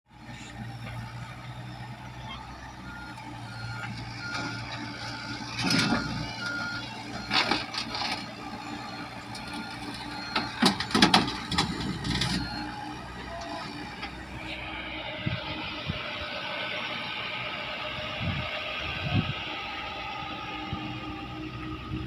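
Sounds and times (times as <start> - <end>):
excavator engine running: 0.1 - 22.0
metallic clanks and knocks: 10.3 - 12.5.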